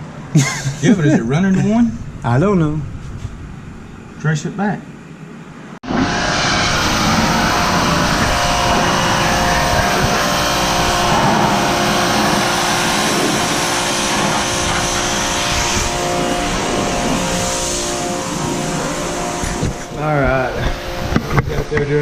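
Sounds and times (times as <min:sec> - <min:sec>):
loud rushing noise: 0:05.5 - 0:22.0
engine running: 0:05.8 - 0:22.0.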